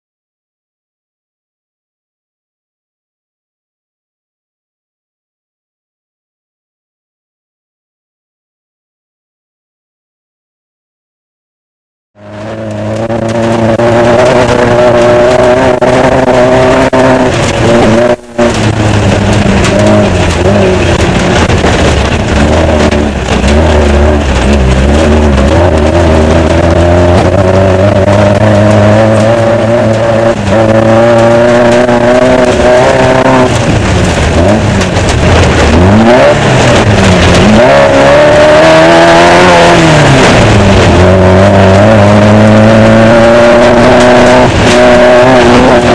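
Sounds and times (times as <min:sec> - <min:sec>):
race car engine running hard: 0:12.2 - 0:45.9
broad rushing noise: 0:12.5 - 0:45.9.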